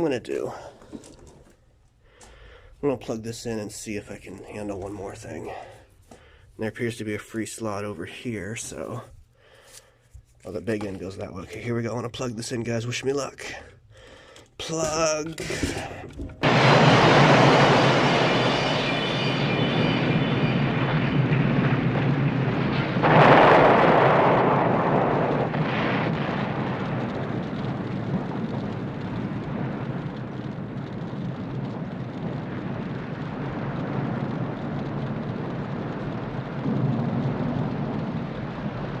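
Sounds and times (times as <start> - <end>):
explosion rumble and blast: 15.5 - 39.0.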